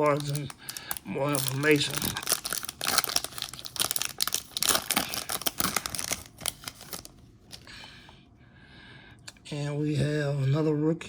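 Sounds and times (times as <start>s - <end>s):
card wrapping crinkling: 0.0s - 7.8s.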